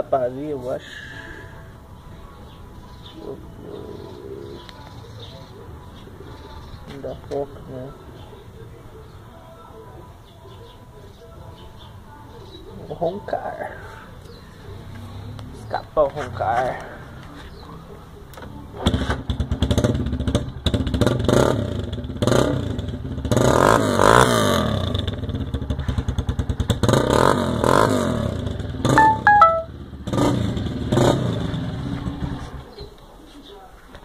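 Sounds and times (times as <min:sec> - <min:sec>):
motorcycle engine revving: 0:18.8 - 0:32.6.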